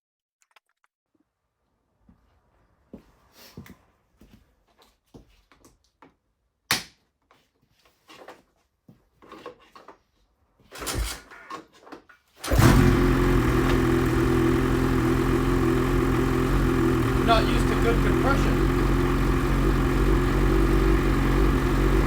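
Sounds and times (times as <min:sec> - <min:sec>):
snowmobile engine idling: 0:12.5 - 0:22.0.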